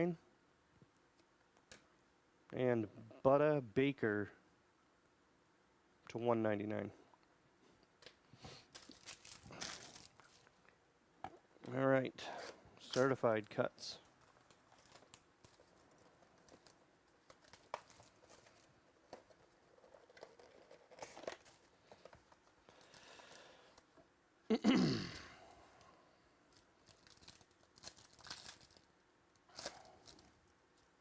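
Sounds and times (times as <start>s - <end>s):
plastic crinkling: 8.6s - 10.7s, 14.0s - 23.8s, 26.5s - 31.0s
packaging being torn open: 26.8s - 28.9s, 29.5s - 30.4s.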